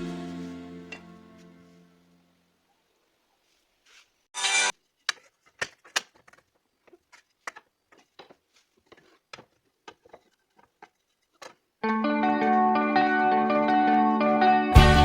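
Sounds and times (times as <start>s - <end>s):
loud scrape or rustle: 3.4s - 6.4s.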